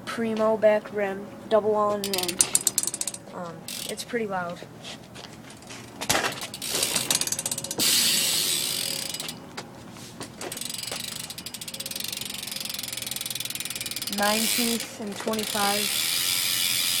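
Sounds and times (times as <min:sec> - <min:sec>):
bike hub ratcheting clicks: 0:02.0 - 0:04.0, 0:05.5 - 0:09.5, 0:10.4 - 0:17.0.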